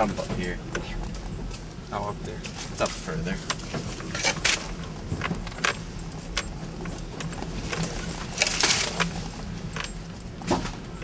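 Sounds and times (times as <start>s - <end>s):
engine hum from inside cab: 0.0s - 11.0s.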